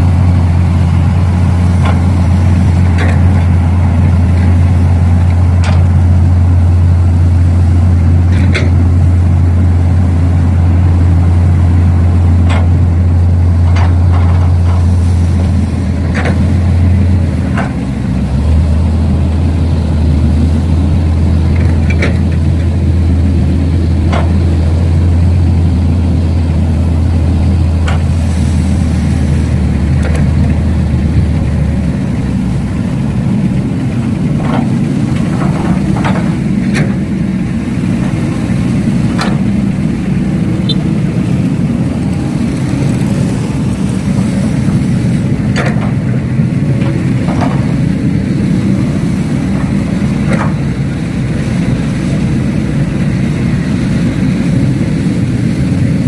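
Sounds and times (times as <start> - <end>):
model vehicle engine drone: 0.0 - 56.0
sharp clicks and knocks: 5.6 - 5.9, 8.3 - 8.8, 12.4 - 12.8, 16.1 - 16.5, 21.5 - 22.7, 24.1 - 24.4, 27.8 - 28.1, 30.0 - 30.6, 39.1 - 39.5, 45.5 - 46.1.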